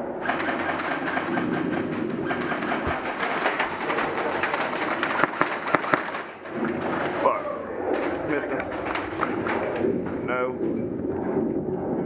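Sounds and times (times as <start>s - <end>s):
airsoft gun rapid firing: 0.2s - 6.4s.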